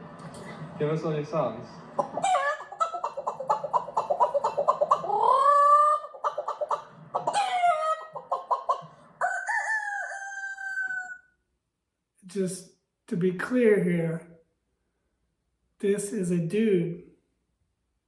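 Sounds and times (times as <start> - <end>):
man imitating hen clucking: 2.0 - 8.8.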